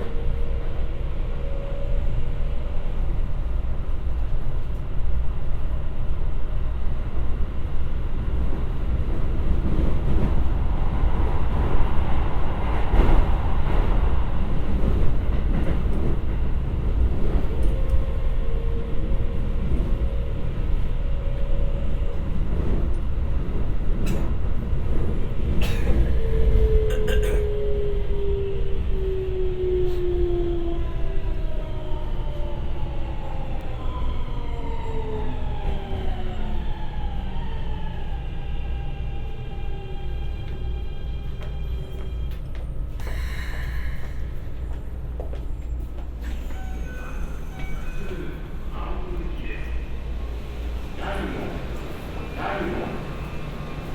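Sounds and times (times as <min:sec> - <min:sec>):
train wheels rumbling on rail: 0:00.0 - 0:33.8.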